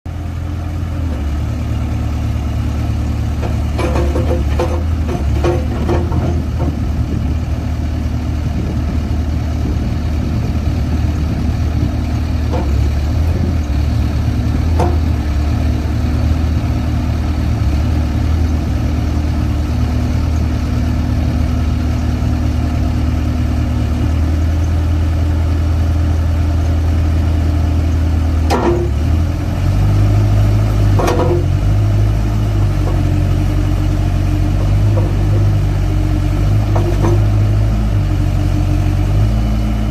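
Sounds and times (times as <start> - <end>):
diesel engine running: 0.1 - 39.9
sharp metallic knocks: 3.4 - 6.9, 12.5 - 13.0, 14.7 - 15.2, 28.5 - 29.0, 30.9 - 31.6, 36.7 - 37.4.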